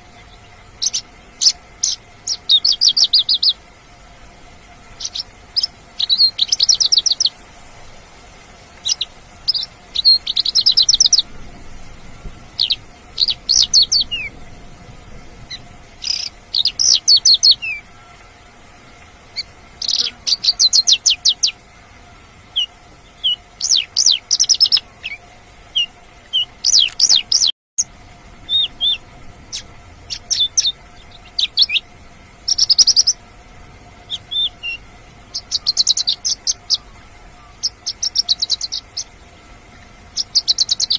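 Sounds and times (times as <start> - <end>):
lark singing: 0.0 - 3.6, 4.9 - 7.4, 8.8 - 11.4, 12.5 - 14.4, 15.4 - 18.3, 19.3 - 21.6, 22.5 - 27.5, 28.4 - 33.2, 34.0 - 39.2, 40.1 - 40.9.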